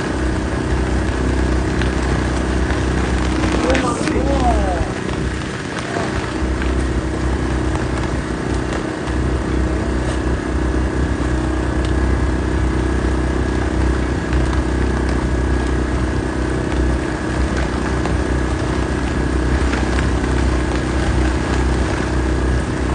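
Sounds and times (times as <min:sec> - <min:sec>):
steady droning hum: 0:00.0 - 0:22.9
wind buffeting microphone: 0:00.0 - 0:22.9.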